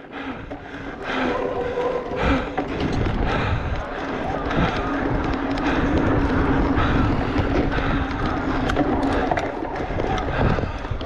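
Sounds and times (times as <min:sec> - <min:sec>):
tyres and frame rattling: 0:00.0 - 0:11.0
wind rumbling on microphone: 0:00.0 - 0:11.0.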